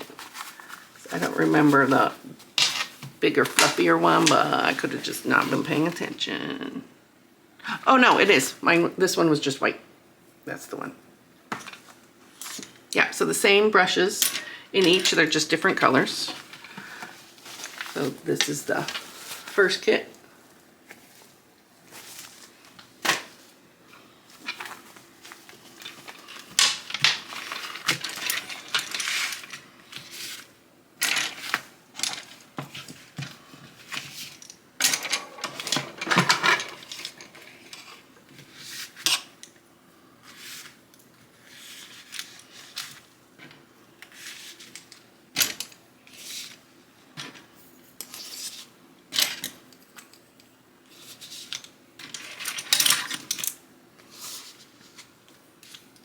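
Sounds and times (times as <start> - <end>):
packaging rustling: 0.0 - 2.2, 16.4 - 19.8, 20.8 - 23.5, 24.3 - 30.4.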